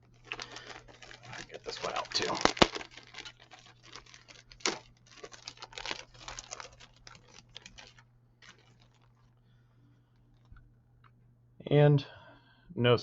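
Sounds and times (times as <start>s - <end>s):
plastic parts clicking and rustling: 0.1s - 9.4s.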